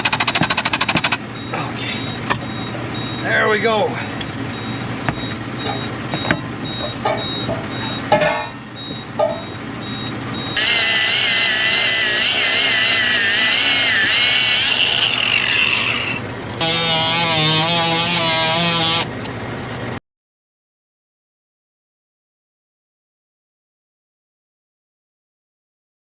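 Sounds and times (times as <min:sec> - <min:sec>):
knocks and clicks: 0:00.0 - 0:01.2, 0:05.0 - 0:09.5
power cutting tool whine: 0:10.6 - 0:19.1.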